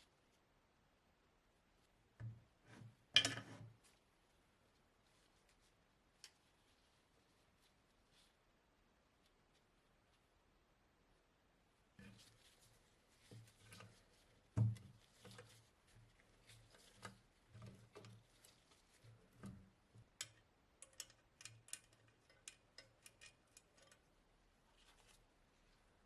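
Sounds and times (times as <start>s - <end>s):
small hard parts clicking: 20.1s - 24.1s.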